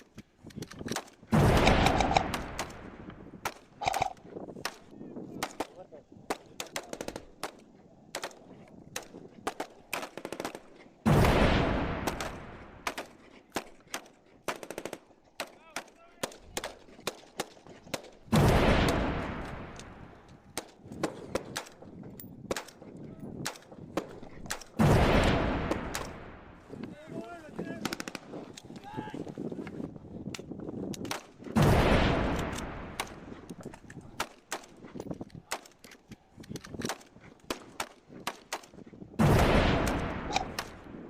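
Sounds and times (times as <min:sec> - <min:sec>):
airsoft gun shots snapping: 0:00.8 - 0:02.8, 0:03.4 - 0:04.8, 0:39.8 - 0:40.8.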